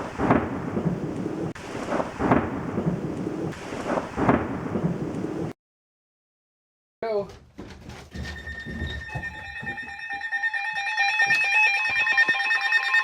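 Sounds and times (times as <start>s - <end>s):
steady rain: 0.0s - 5.6s
thunder rumbling: 0.0s - 5.6s.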